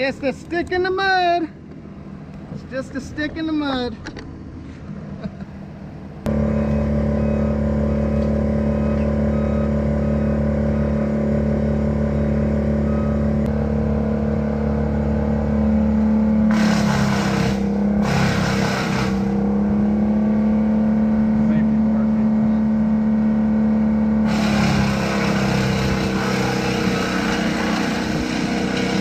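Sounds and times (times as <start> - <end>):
chainsaw running at high revs: 6.3 - 19.7, 24.2 - 29.0
chainsaw cutting: 6.3 - 19.8, 24.2 - 29.0.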